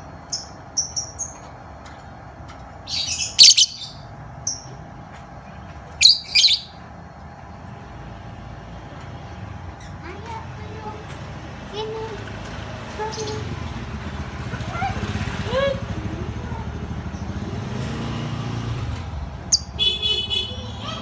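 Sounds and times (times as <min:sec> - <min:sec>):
lovebird harsh calls: 0:02.9 - 0:04.6, 0:06.0 - 0:06.8
lovebird chirping: 0:02.9 - 0:04.7, 0:06.0 - 0:06.8.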